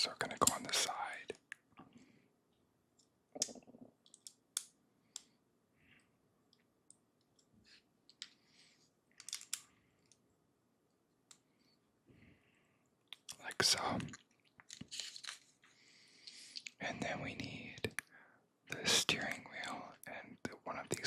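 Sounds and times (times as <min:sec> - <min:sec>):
soft rustling of pieces: 0:00.0 - 0:18.1
plastic bricks clicking: 0:09.2 - 0:09.6.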